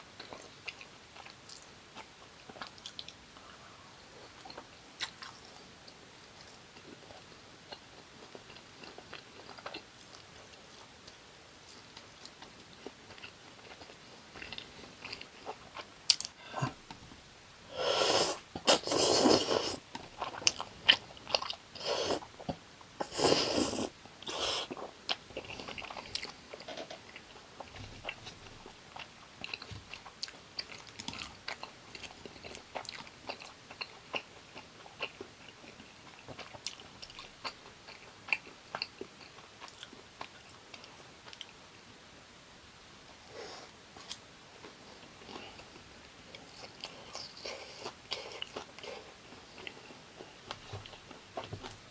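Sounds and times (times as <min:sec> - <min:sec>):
wet chewing with mouth clicks: 0:43.4 - 0:51.8.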